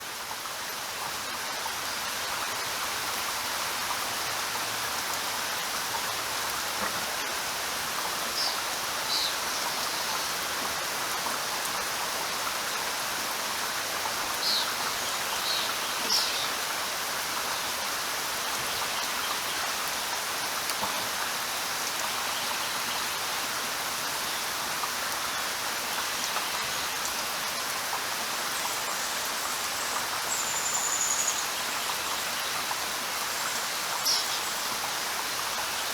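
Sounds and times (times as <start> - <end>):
steady rain falling: 0.0 - 35.9.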